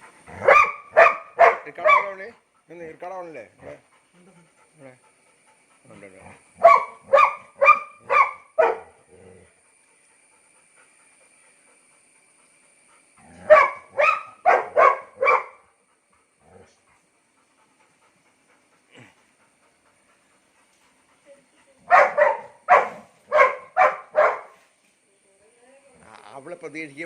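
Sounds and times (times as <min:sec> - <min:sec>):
dogs barking: 0:00.0 - 0:02.3, 0:06.6 - 0:09.0, 0:13.3 - 0:15.7, 0:21.8 - 0:24.6.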